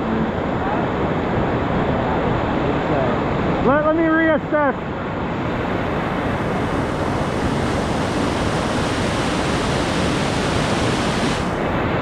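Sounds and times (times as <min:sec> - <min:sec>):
whitewater rushing: 0:00.1 - 0:12.0.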